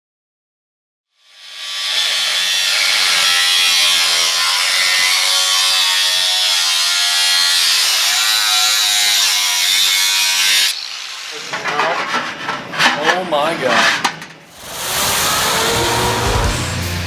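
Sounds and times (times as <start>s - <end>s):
power tool cutting metal: 1.4s - 17.0s.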